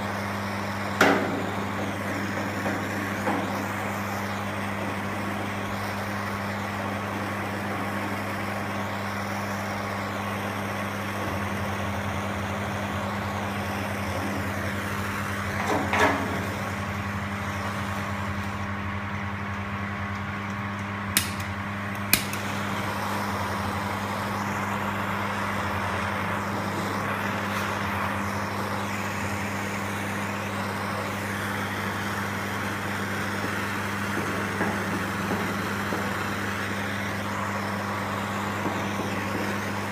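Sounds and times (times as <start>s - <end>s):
mechanical drone with low hum: 0.0s - 39.9s
sharp clicks: 19.5s - 22.4s.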